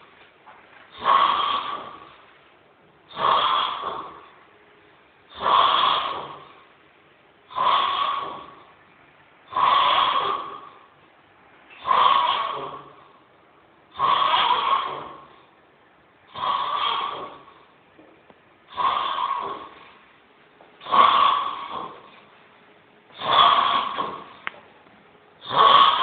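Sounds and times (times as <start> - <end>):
person snoring: 0.9 - 2.2, 3.1 - 4.3, 7.5 - 8.6, 9.5 - 10.8, 16.3 - 17.5, 18.7 - 19.8, 20.8 - 22.2, 23.2 - 24.4, 25.4 - 26.0.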